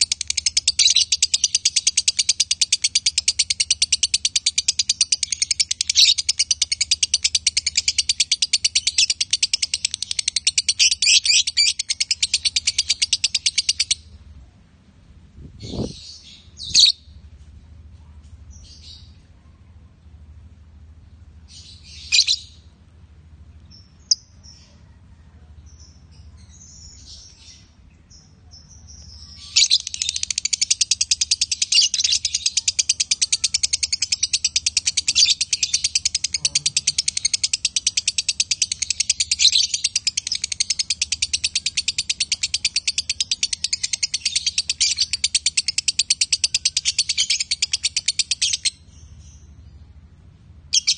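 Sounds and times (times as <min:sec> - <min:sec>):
bird rapid chattering trill: 0:00.0 - 0:14.0, 0:29.5 - 0:48.8
bird chirping: 0:00.0 - 0:14.2, 0:15.5 - 0:17.2, 0:21.4 - 0:22.8, 0:23.5 - 0:50.0, 0:50.7 - 0:50.9.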